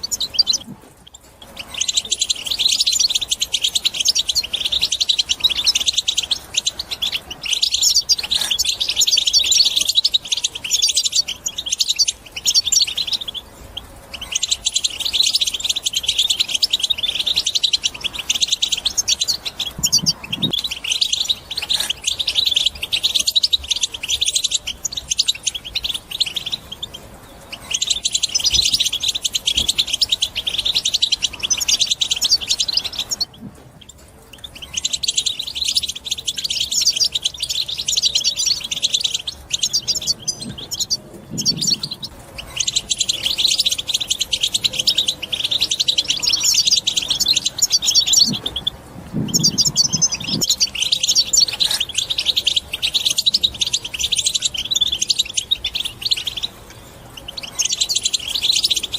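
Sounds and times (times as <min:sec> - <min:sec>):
bird singing high twittering song: 0:00.0 - 0:58.9.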